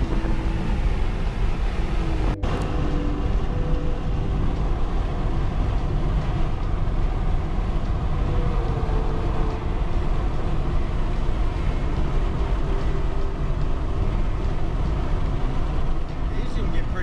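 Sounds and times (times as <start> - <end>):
car road and engine rumble: 0.0 - 17.0
faint droning tone: 0.0 - 17.0.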